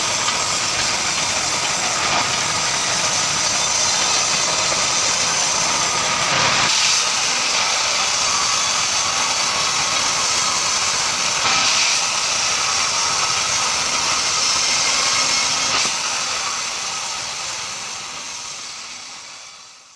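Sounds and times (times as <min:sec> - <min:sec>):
bandsaw cutting timber: 0:00.0 - 0:19.8.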